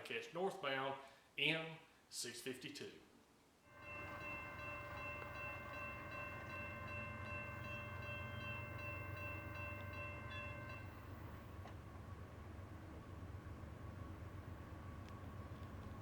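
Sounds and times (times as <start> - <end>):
faint locomotive horn: 3.7 - 16.0
low continuous rumble: 7.1 - 16.0.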